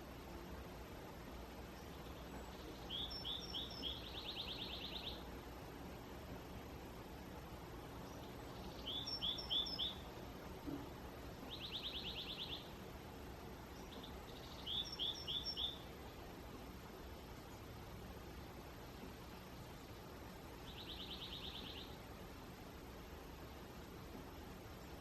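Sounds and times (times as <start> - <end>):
small songbirds singing: 1.4 - 5.6, 7.7 - 22.2.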